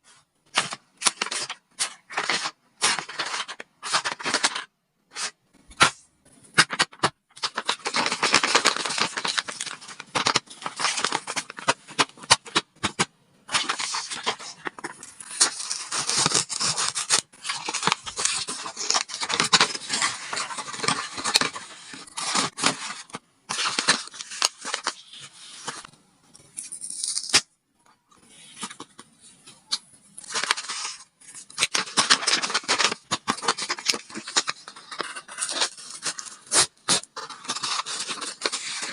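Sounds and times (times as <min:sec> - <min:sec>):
paper and tape crinkling: 0:06.6 - 0:25.9, 0:30.2 - 0:38.9.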